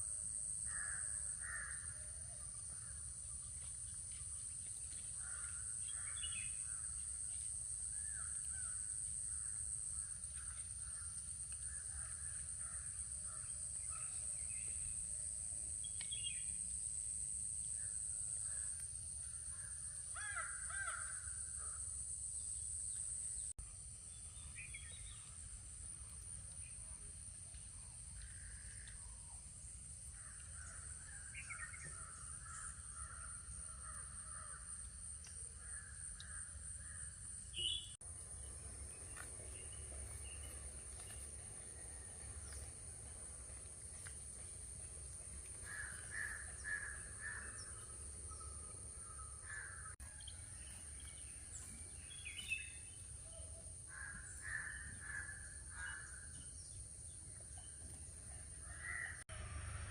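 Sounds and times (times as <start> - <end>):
crows cawing: 0.7 - 1.9, 19.6 - 21.8, 45.4 - 50.0, 53.9 - 56.3.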